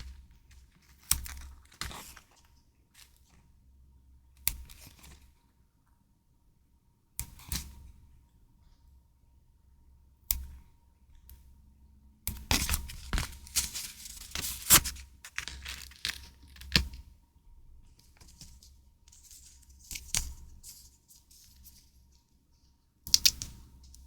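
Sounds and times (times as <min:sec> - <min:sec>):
paper tearing and crinkling: 0:00.0 - 0:02.4, 0:12.5 - 0:16.8
paper tapping and rustling: 0:00.0 - 0:03.3, 0:12.5 - 0:17.0, 0:18.0 - 0:21.8.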